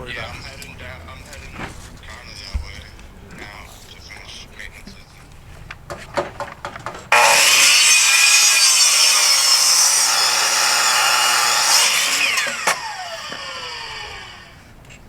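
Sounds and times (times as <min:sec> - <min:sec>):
motor winding down: 0:07.1 - 0:14.6
power tool cutting with hissing: 0:07.1 - 0:14.6.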